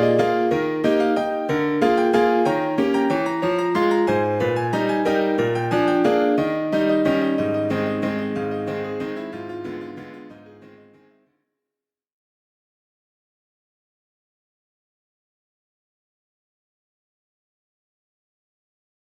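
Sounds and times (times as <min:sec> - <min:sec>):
midi ringtone melody: 0:00.0 - 0:09.2.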